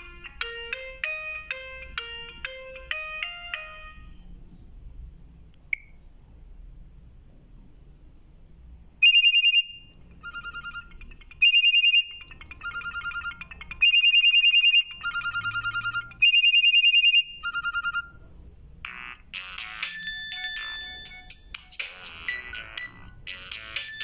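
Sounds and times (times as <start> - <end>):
trilling electronic ringtone: 0.0 - 4.3, 9.0 - 18.2, 18.8 - 24.0.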